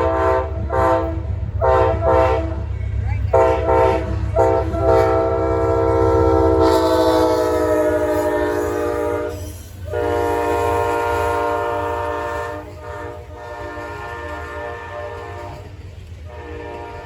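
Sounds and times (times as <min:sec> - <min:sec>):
train horn blasts: 0:00.0 - 0:17.0
train rumbling past: 0:00.0 - 0:17.0.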